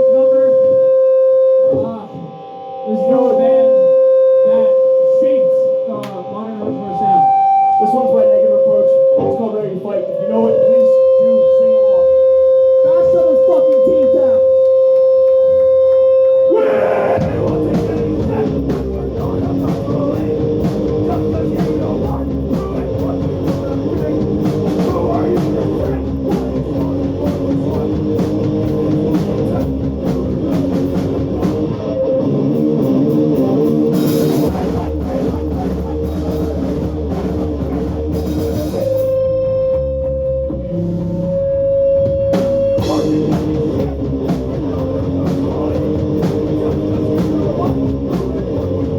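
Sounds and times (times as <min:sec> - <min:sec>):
punk band playing loud: 0:11.9 - 0:48.9.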